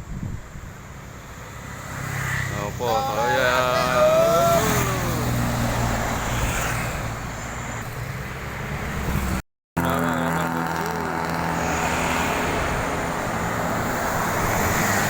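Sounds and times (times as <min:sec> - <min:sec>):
road traffic: 0:00.0 - 0:15.0.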